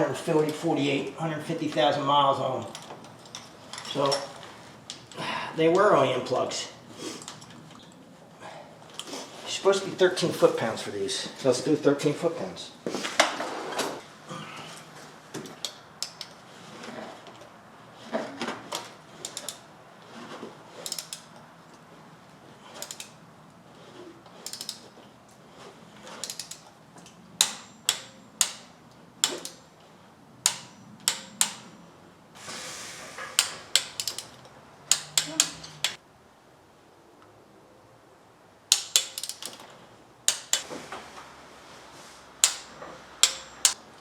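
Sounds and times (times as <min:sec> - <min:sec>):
wrench ratcheting clicks: 0:15.6 - 0:16.4, 0:19.2 - 0:19.7, 0:20.8 - 0:21.4, 0:22.8 - 0:23.2, 0:24.4 - 0:24.9, 0:26.1 - 0:26.7, 0:27.4 - 0:29.7, 0:30.4 - 0:31.8, 0:33.4 - 0:36.0, 0:38.7 - 0:39.7, 0:40.3 - 0:40.7, 0:42.4 - 0:43.8.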